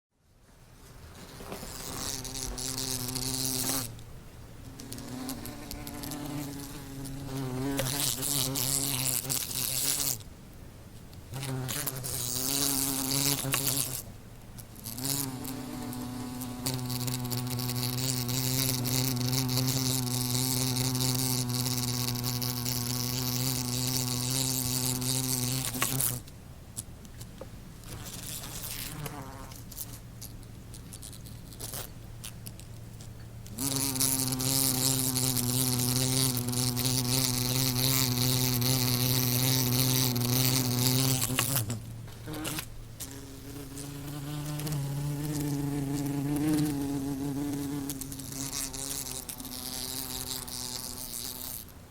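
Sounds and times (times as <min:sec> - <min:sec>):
wasp buzzing in flight: 0:01.2 - 0:03.9, 0:04.7 - 0:10.2, 0:11.4 - 0:14.0, 0:14.8 - 0:26.2, 0:33.5 - 0:51.7.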